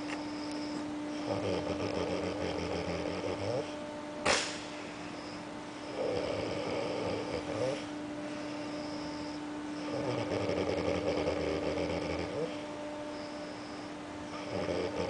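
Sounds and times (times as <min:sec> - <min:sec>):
steady whine: 0:00.0 - 0:15.0
man snoring: 0:01.2 - 0:03.7, 0:05.9 - 0:07.9, 0:09.8 - 0:12.6, 0:14.3 - 0:15.0.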